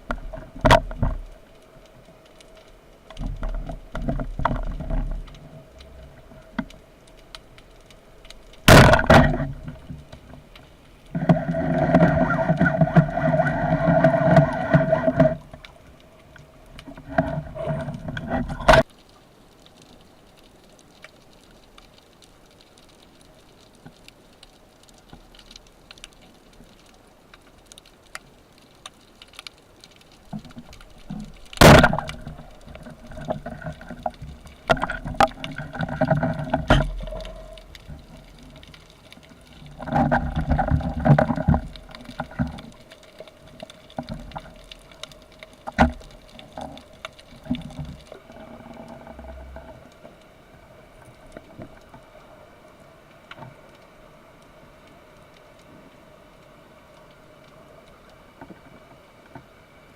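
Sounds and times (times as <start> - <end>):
underwater gurgling: 0.0 - 21.7, 22.6 - 59.9
underwater clicks: 27.7 - 50.3.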